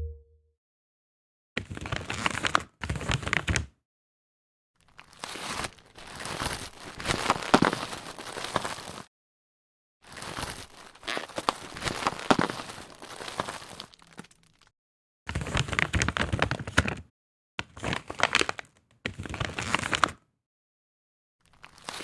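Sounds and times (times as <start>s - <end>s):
plastic bag rustling: 4.9s - 9.1s, 10.1s - 14.7s.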